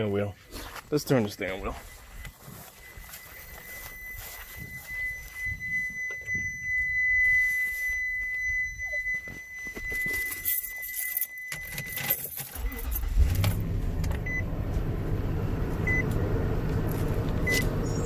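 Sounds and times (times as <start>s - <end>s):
high warning tone: 0.9s - 16.1s
short beeps: 1.1s - 13.2s, 14.2s - 14.5s, 17.5s - 18.0s
keys jingling: 9.4s - 13.2s
car engine starting and idling: 11.5s - 18.0s.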